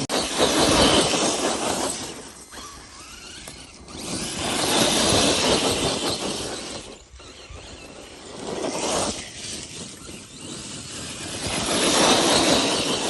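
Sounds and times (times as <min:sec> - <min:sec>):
electric motor and drivetrain whining: 0:00.0 - 0:13.0.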